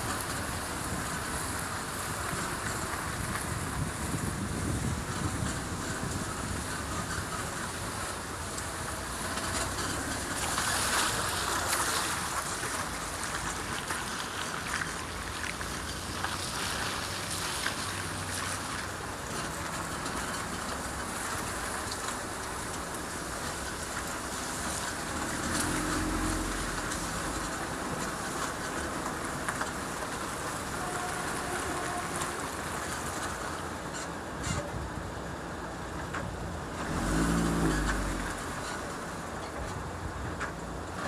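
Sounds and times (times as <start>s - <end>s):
car road and wind noise: 0.0s - 41.0s.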